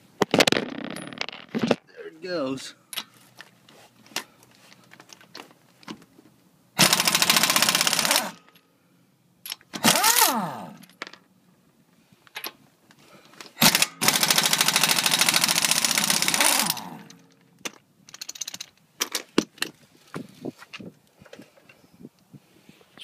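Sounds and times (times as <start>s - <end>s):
impact wrench whirring spin: 6.8s - 8.4s, 9.8s - 10.8s, 13.6s - 17.2s.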